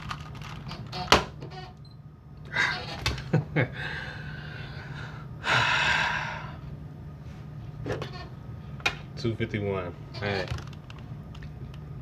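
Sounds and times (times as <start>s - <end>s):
person breathing: 3.7s - 6.7s.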